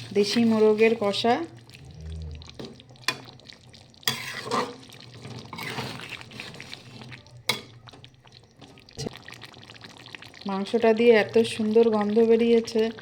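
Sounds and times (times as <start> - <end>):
utensil stirring and scraping in pan: 0.0 - 9.2.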